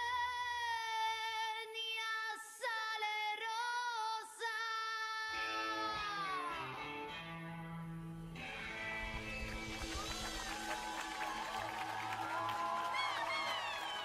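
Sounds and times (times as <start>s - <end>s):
woman singing: 0.0s - 6.9s.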